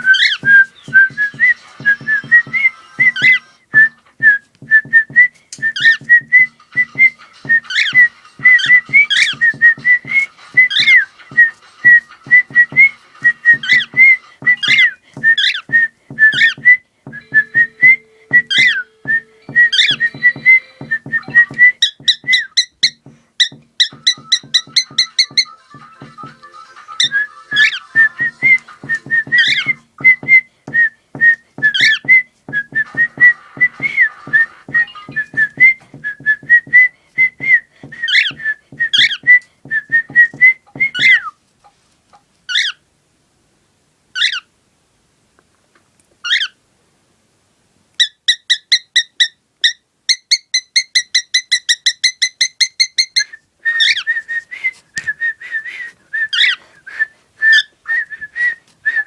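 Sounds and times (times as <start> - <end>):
cockatiel whistling: 0.0 - 41.3
regular low beat: 12.2 - 26.4, 27.9 - 41.0.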